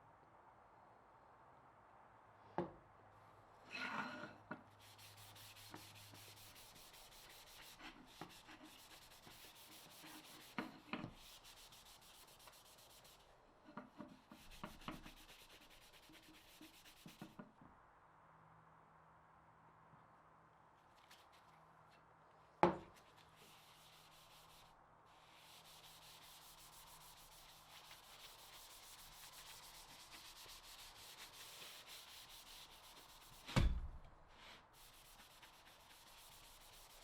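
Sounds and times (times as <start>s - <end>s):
hand sanding wood: 4.8s - 13.2s, 14.0s - 17.4s, 23.4s - 33.6s, 34.4s - 37.0s.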